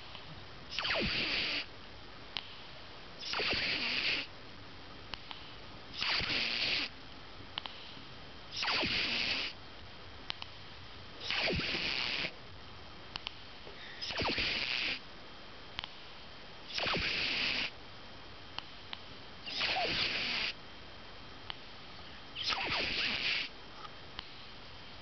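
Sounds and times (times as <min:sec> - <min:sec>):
kitten snoring: 0:00.7 - 0:01.7, 0:03.2 - 0:04.3, 0:06.0 - 0:06.9, 0:08.5 - 0:09.6, 0:11.2 - 0:12.4, 0:13.9 - 0:15.0, 0:16.7 - 0:17.7, 0:19.5 - 0:20.6, 0:22.4 - 0:23.5.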